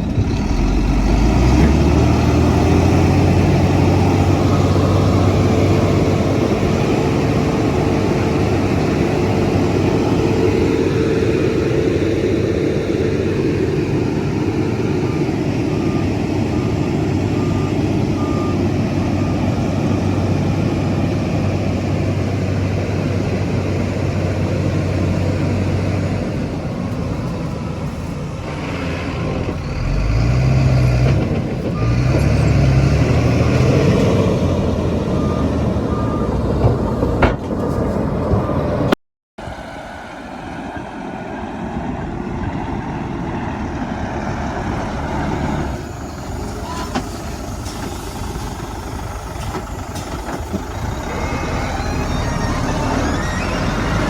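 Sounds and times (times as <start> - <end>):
heavy diesel machinery running: 0.0 - 54.0
reversing alarm beeps: 35.1 - 36.6, 49.2 - 54.0.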